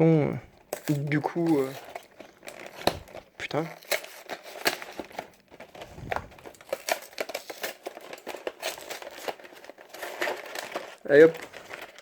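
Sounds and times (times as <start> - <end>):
packaging crinkling and crackling: 0.6 - 12.0.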